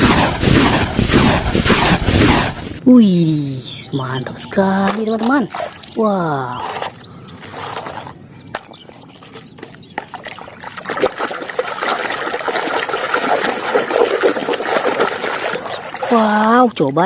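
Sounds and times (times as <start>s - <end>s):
water trickling and splashing: 3.4s - 17.0s.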